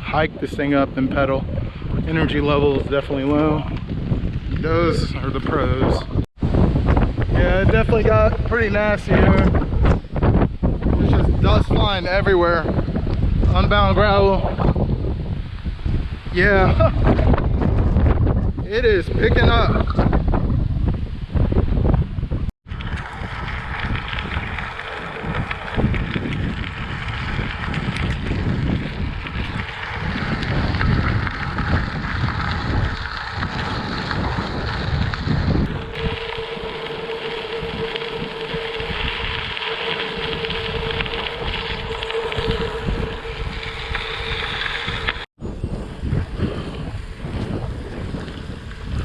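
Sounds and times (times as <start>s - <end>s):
wind buffeting microphone: 0.0s - 49.0s
steady mid-pitched hum: 22.7s - 45.3s.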